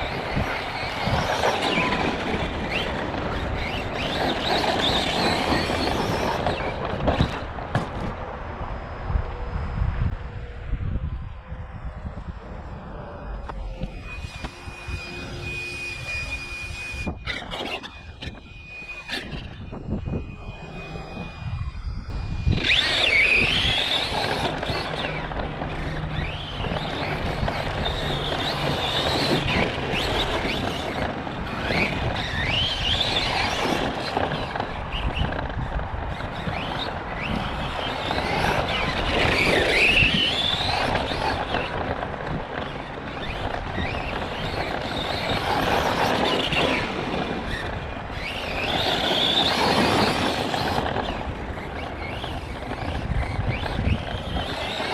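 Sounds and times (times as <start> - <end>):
tyre and drivetrain noise: 0.0 - 54.9
electric motor whining: 12.1 - 54.9.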